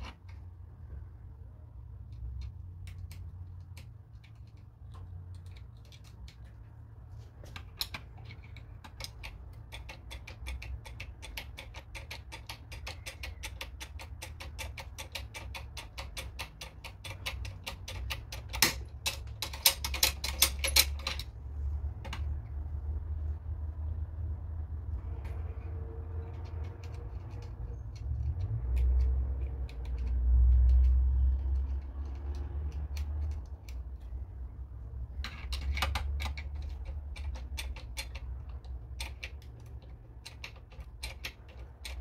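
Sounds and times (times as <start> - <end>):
lock pick clicking in lock: 7.8 - 21.3, 35.3 - 42.0.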